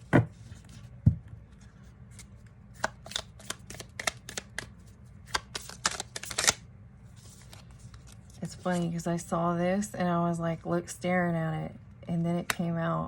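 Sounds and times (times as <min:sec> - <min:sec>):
cards being shuffled: 0:00.4 - 0:08.9.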